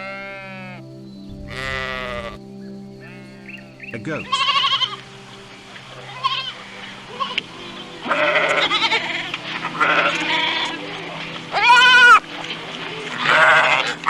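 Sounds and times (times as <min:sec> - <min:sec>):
goat bleating: 0:00.0 - 0:00.8, 0:04.2 - 0:05.0, 0:06.0 - 0:12.2, 0:12.9 - 0:14.0.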